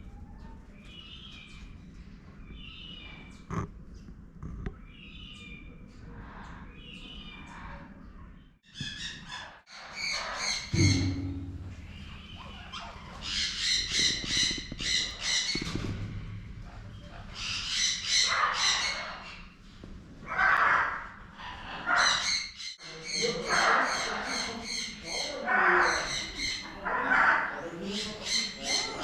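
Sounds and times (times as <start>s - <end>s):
birds harsh chattering calls: 8.7s - 19.6s, 20.3s - 29.0s.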